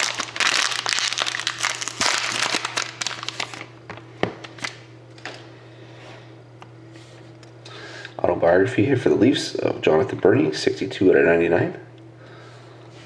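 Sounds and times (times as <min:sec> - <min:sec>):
card pack wrapper crinkling: 0:00.0 - 0:04.8.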